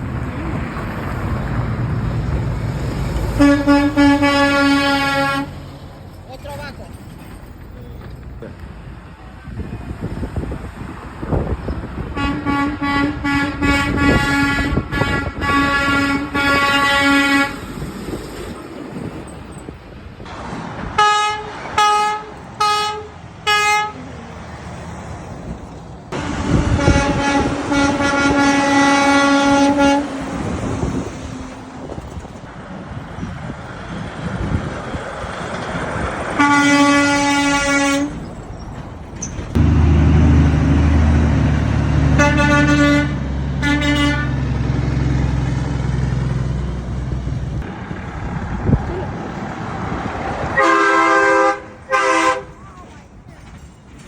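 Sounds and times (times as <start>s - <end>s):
traffic and engine noise: 0.0s - 54.0s
truck air horns: 3.3s - 5.8s, 12.0s - 17.8s, 20.9s - 24.1s, 26.2s - 30.6s, 36.3s - 38.2s, 42.0s - 44.6s, 50.5s - 52.8s.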